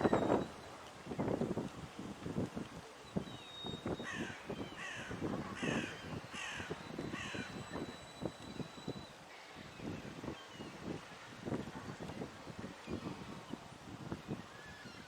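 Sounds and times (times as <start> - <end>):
wind buffeting microphone: 0.0 - 15.0
harsh caw-like bird calls: 4.0 - 7.5.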